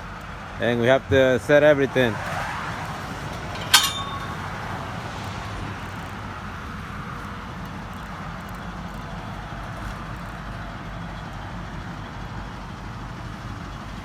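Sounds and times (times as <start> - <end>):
vehicle engine rumble: 0.0 - 14.0
sharp metallic clank: 3.3 - 5.0.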